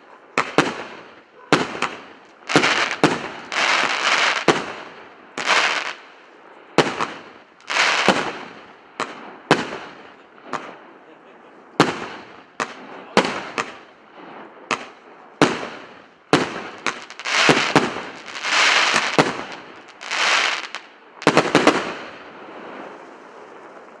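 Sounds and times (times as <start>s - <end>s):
firework bangs: 0.3s - 6.0s, 6.8s - 10.9s, 11.8s - 23.0s
firework crackling hiss: 1.8s - 4.8s, 5.4s - 6.0s, 16.4s - 22.9s.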